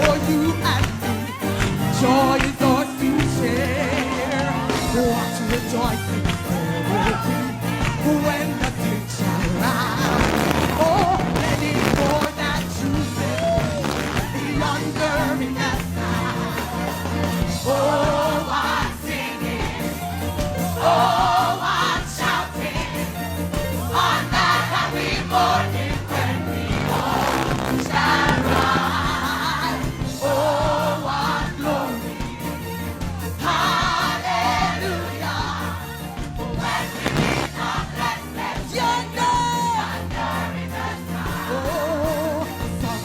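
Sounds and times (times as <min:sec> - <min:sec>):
gospel choir singing: 0:00.0 - 0:43.0
instrumental accompaniment: 0:00.0 - 0:43.0.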